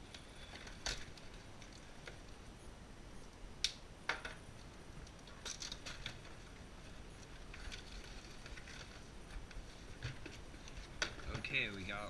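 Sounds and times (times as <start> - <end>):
packaging crinkling and rustling: 5.0 - 12.0.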